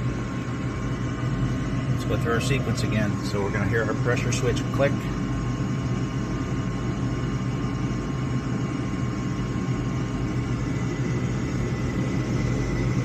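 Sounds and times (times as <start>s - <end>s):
furnace motor humming: 0.0s - 13.0s.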